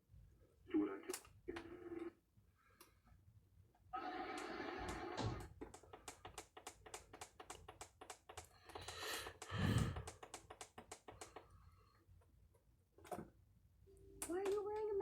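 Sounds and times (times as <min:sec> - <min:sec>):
rapid sharp clicks: 0:04.9 - 0:11.5.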